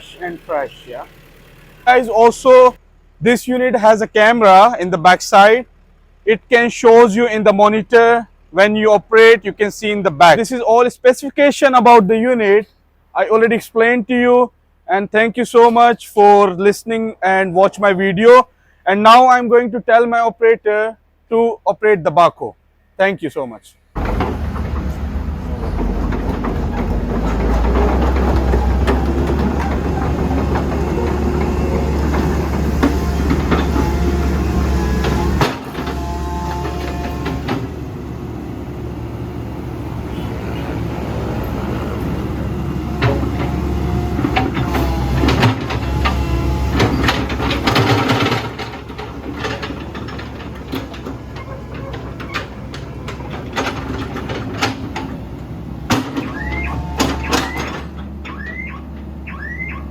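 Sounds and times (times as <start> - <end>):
excavator diesel engine running: 0.0 - 2.9, 24.0 - 59.9
machine clanks and knocks: 24.0 - 59.7.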